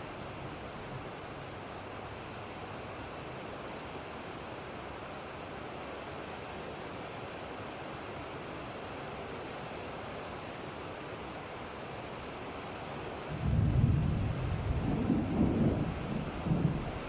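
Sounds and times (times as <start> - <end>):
steady rain: 0.0 - 17.0.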